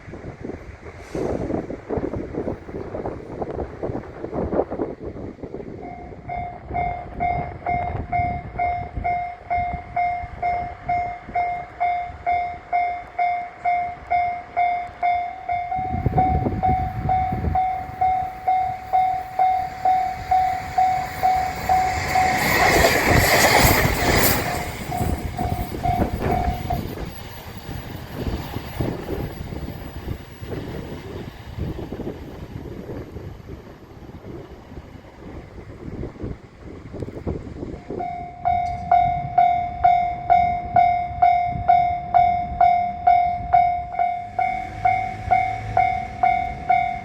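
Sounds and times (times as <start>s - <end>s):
train wheel-on-rail noise: 0.0s - 47.0s
level-crossing warning bell ringing: 5.7s - 31.0s, 37.8s - 47.0s.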